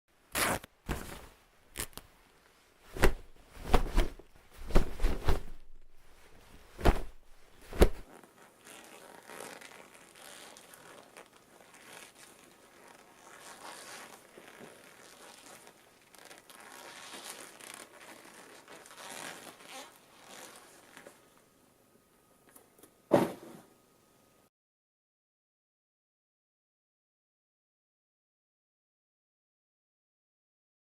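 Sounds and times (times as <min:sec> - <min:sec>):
fabric swishes and snaps: 0:00.3 - 0:02.1, 0:02.8 - 0:21.2, 0:23.1 - 0:23.7
cloth rustling: 0:00.3 - 0:21.3.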